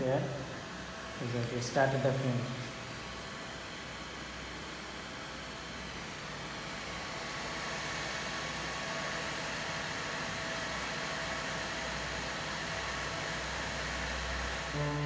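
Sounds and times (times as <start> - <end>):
cooling fan whirring hiss: 0.0 - 15.0
faint motor whine: 0.0 - 15.0.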